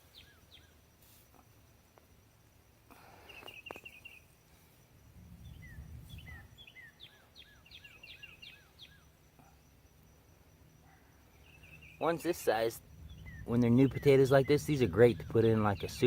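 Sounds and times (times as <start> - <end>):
songbird singing: 0.0 - 16.0
low rumble: 5.0 - 6.8, 12.7 - 16.0.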